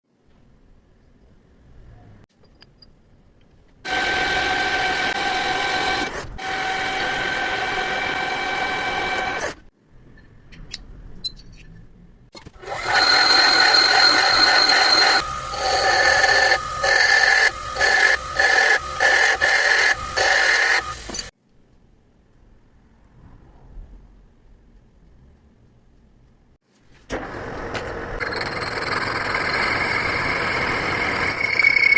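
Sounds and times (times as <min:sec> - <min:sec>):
machine tool cutting metal whine: 0:03.9 - 0:09.5, 0:12.6 - 0:21.3, 0:28.2 - 0:31.9.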